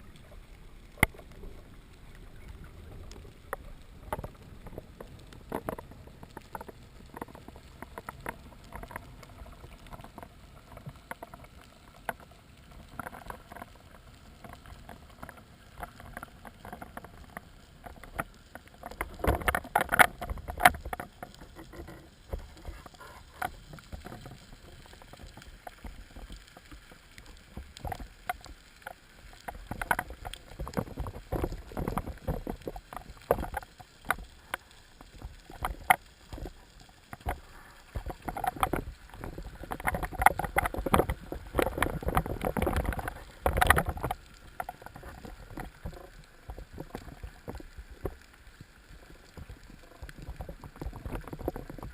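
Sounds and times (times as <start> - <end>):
underwater clicks crackling: 0.0 - 51.9
water movement: 0.0 - 51.9.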